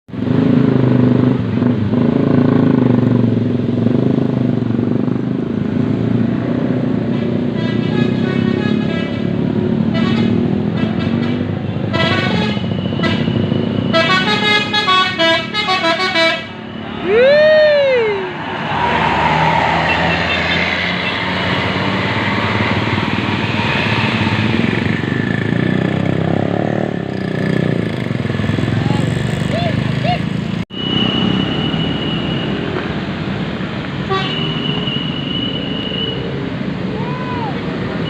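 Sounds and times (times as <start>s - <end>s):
road noise: 0.1s - 38.0s
bus horn playing melodic tune: 7.1s - 9.3s, 9.9s - 16.6s, 34.1s - 34.7s.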